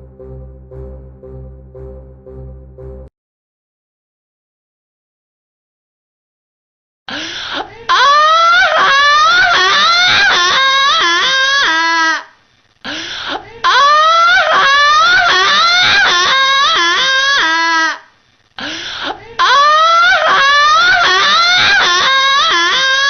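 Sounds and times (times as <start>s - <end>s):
alarm clock wailing cry: 8.0s - 11.6s, 13.7s - 17.4s, 19.4s - 23.0s.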